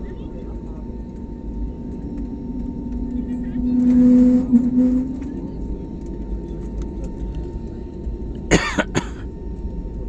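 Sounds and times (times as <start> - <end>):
airliner cabin rumble: 0.0 - 10.0
person coughing: 8.5 - 9.2.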